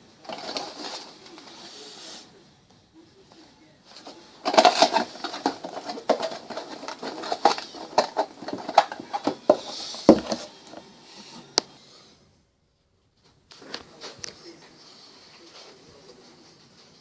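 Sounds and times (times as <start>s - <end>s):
packaging rustling and clicking: 0.2s - 1.4s, 3.9s - 10.5s.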